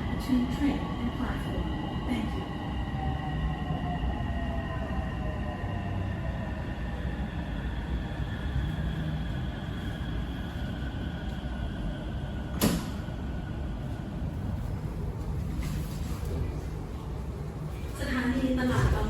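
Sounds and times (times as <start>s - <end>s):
train low rumble: 0.0s - 19.0s
sharp clunk: 12.6s - 13.0s.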